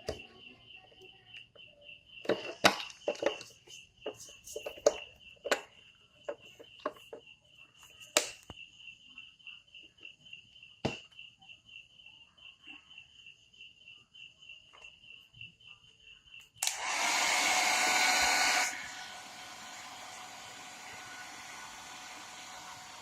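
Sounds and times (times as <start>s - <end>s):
cricket chirping: 0.0s - 16.6s.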